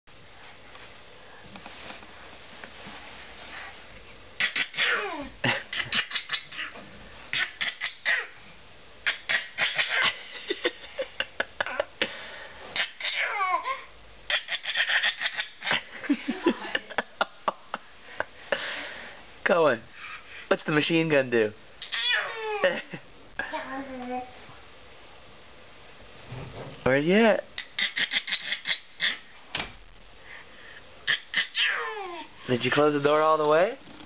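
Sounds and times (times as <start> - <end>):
child squealing: 4.4 - 5.3, 7.4 - 8.4, 12.8 - 15.6, 21.8 - 22.7, 31.1 - 32.3
child laughing: 9.1 - 12.0, 12.8 - 17.0, 21.9 - 24.0.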